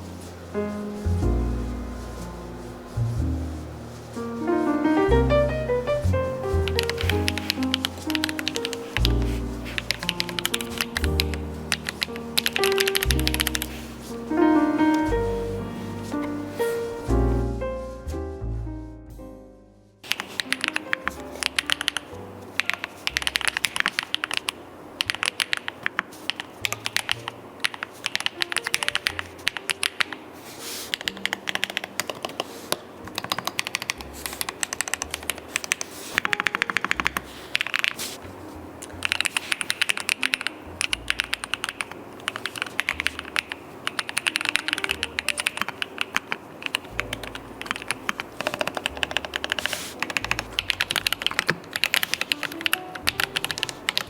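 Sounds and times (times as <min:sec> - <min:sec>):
keyboard typing: 0:04.7 - 0:15.1, 0:20.0 - 0:30.2, 0:30.9 - 0:38.1, 0:38.9 - 0:54.0.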